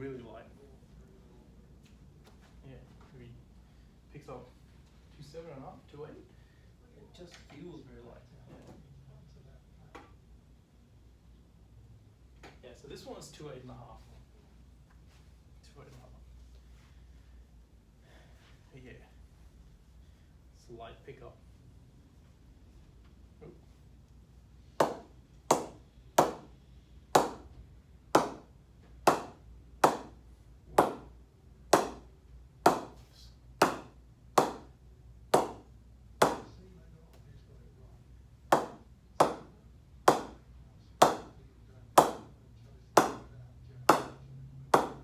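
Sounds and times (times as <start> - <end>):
cricket bat pinging: 24.8 - 26.5, 27.2 - 27.5, 29.1 - 30.2, 31.7 - 32.1, 32.7 - 33.0, 33.6 - 34.7, 35.4 - 36.5, 38.5 - 39.5, 40.1 - 40.4, 41.0 - 41.4, 42.0 - 42.3, 43.0 - 43.3, 43.9 - 44.2, 44.8 - 45.0.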